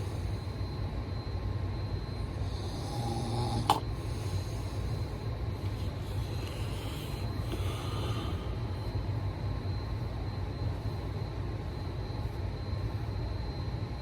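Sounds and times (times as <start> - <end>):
person snoring: 2.4 - 4.5.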